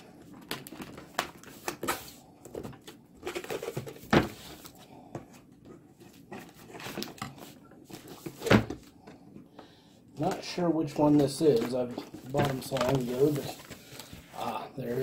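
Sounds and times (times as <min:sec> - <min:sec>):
bubble wrap and cardboard crinkling: 0:00.0 - 0:04.8, 0:10.2 - 0:15.0.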